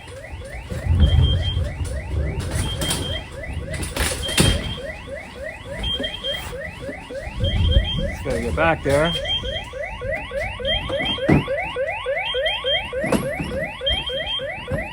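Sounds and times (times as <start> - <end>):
electronic alarm chirps: 0.0 - 14.9
low rumble: 7.2 - 8.4.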